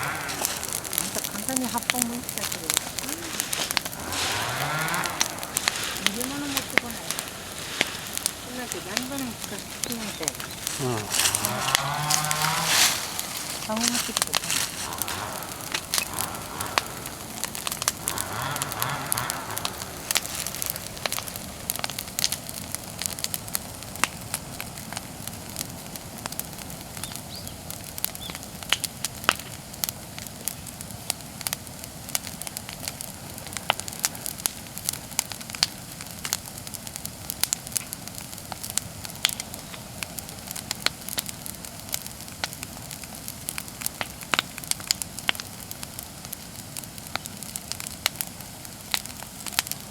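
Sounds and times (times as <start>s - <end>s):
bonfire crackling and popping: 0.0s - 49.9s.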